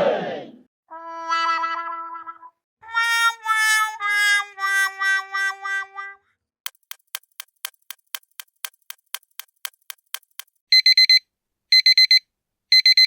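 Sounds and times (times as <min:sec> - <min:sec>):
clock ticking: 0:06.7 - 0:11.2
digital alarm clock beeping: 0:10.2 - 0:13.0.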